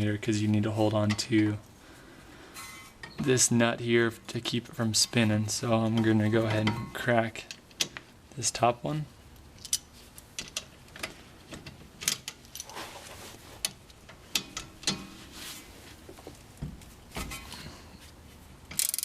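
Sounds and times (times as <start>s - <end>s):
wrench clicking on metal bolt: 18.7s - 19.0s.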